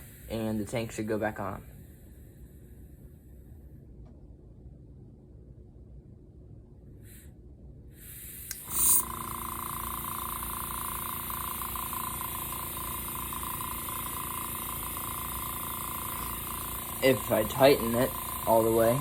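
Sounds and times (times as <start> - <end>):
loud burst of air hiss: 0.0 - 0.7, 7.9 - 19.0
airbrush compressor whine and hiss: 0.0 - 2.4, 8.0 - 19.0.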